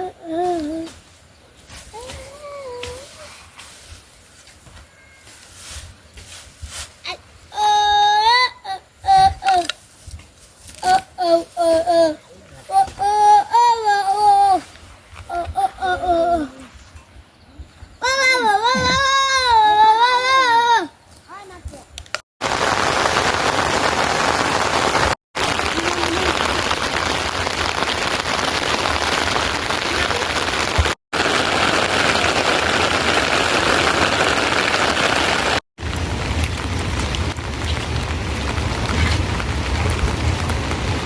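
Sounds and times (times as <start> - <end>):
heavy rain: 22.4 - 41.0.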